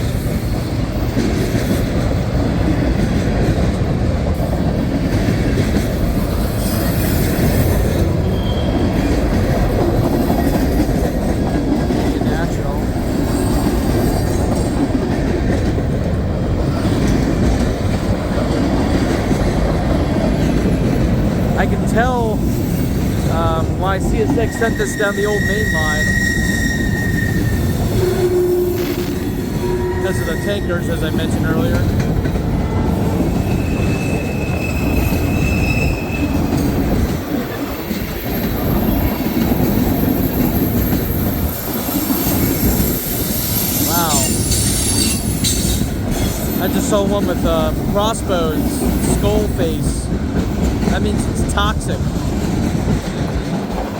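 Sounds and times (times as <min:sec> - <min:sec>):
freight train wheels rumbling: 0:00.0 - 0:53.9
high wheel squeal: 0:06.5 - 0:09.3, 0:24.2 - 0:31.6, 0:32.8 - 0:36.5, 0:39.9 - 0:46.7.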